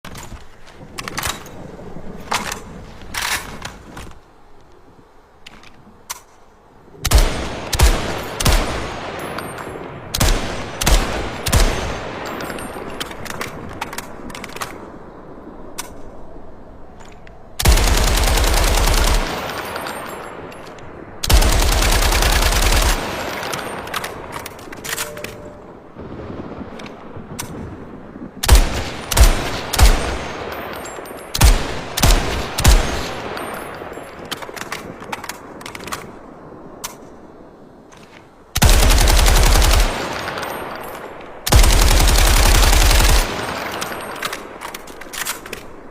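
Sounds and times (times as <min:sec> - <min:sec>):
rifle gunshots with echo: 0:26.6 - 0:34.2.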